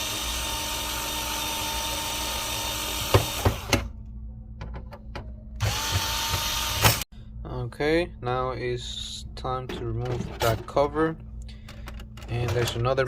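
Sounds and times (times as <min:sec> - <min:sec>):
electric screwdriver running: 0:00.0 - 0:03.7, 0:05.6 - 0:07.0.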